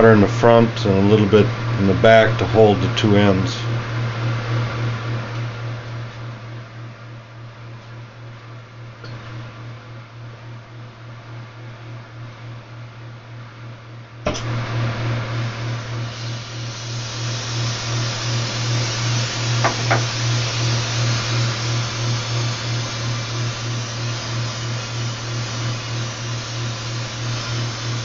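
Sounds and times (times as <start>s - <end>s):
torch igniting click: 14.2s - 14.6s, 17.2s - 20.4s
pulsing hum: 14.3s - 28.0s
torch flame hissing: 14.3s - 28.0s.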